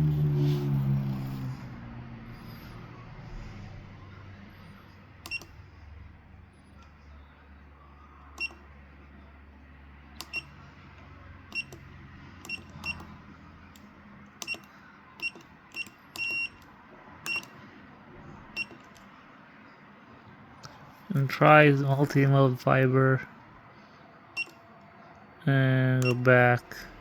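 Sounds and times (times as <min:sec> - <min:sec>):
short high keypad beeps: 0:11.6 - 0:11.8, 0:12.5 - 0:13.1, 0:15.2 - 0:16.6, 0:17.3 - 0:17.5, 0:26.0 - 0:26.2.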